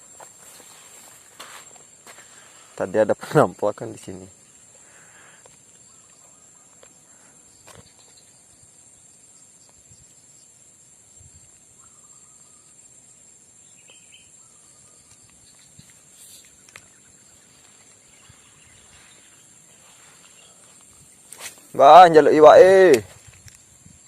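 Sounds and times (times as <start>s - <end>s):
high-pitched insect chorus: 0.0s - 24.0s
sharp click: 22.9s - 23.6s.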